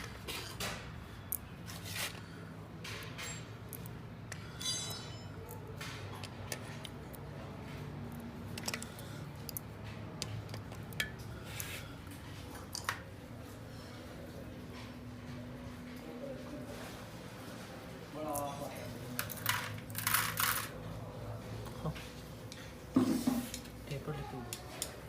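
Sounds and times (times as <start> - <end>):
metallic clinks of tools: 4.5 - 5.6.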